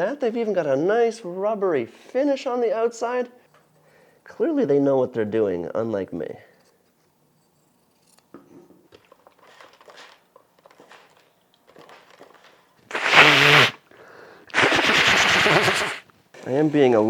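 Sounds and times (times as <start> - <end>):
rough vocal burst: 12.9 - 13.8, 14.5 - 16.0.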